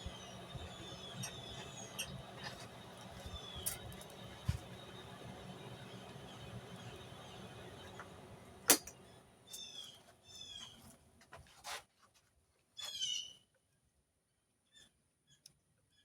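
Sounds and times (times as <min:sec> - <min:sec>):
sharp click: 0:08.7 - 0:09.0.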